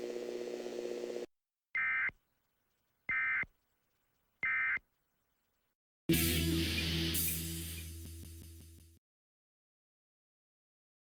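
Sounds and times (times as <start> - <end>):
music: 6.1 - 9.0.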